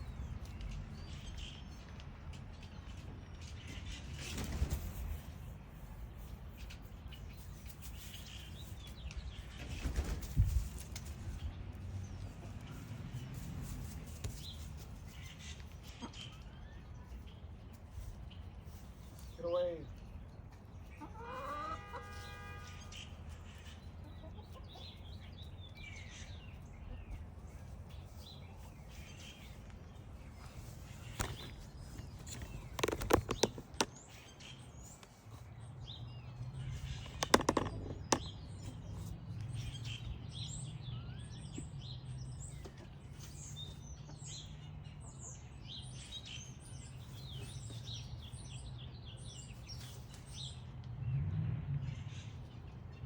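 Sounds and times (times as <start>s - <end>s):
birds chirping: 14.3s - 50.8s.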